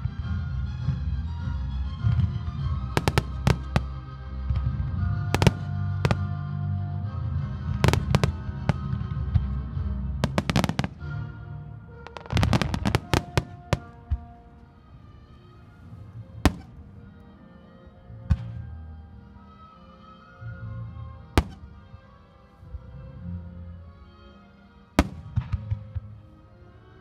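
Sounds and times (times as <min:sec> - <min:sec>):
fireworks bangs and crackles: 0:02.0 - 0:06.4, 0:07.7 - 0:09.6, 0:10.2 - 0:11.3, 0:11.9 - 0:14.5, 0:15.7 - 0:17.1, 0:21.4 - 0:21.9, 0:25.0 - 0:26.2.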